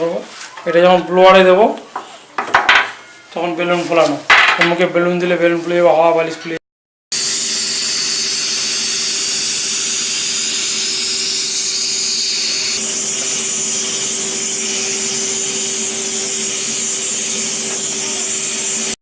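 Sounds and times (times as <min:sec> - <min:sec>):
vacuum cleaner blowing air: 0:07.2 - 0:19.0.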